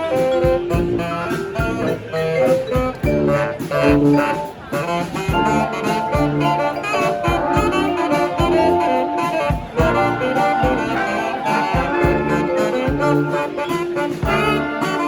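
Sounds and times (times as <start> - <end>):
brass band playing: 0.0 - 15.0
low drum hits: 7.2 - 8.8.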